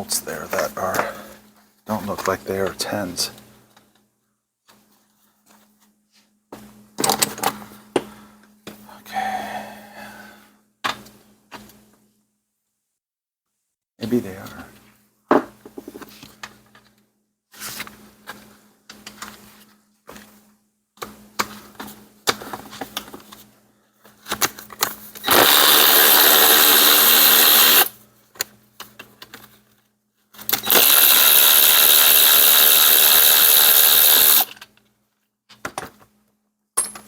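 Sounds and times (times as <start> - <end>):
power driver running: 25.2 - 27.9, 30.5 - 34.5
tools clinking and knocking: 36.8 - 37.0.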